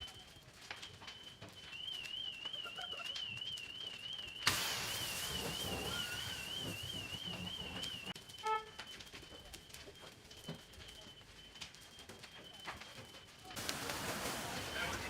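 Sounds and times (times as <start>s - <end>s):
high-pitched warbling alarm tone: 5.1s - 11.1s.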